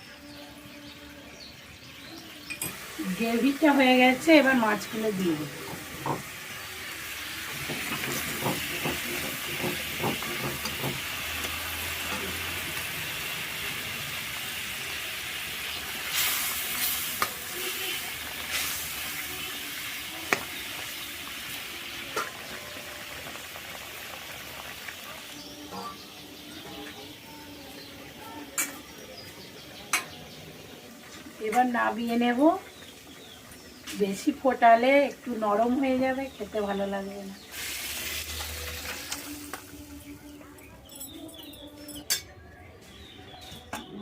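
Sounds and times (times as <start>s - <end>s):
fish sizzling in a pan: 2.2s - 29.1s, 30.7s - 40.3s.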